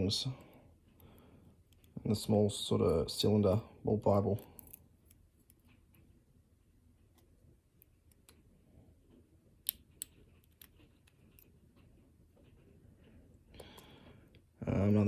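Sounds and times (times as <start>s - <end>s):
small metal lock parts clicking: 4.4s - 5.8s, 9.6s - 11.5s.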